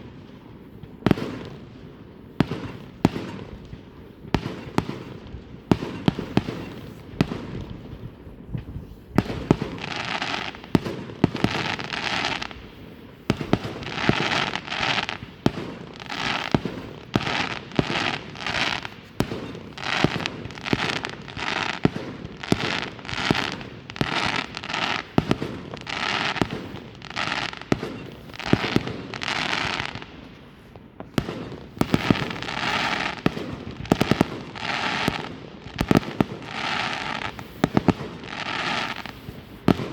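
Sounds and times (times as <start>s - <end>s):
fireworks bangs and pops: 0.0s - 39.9s
hissing crackling bursts: 8.8s - 39.9s.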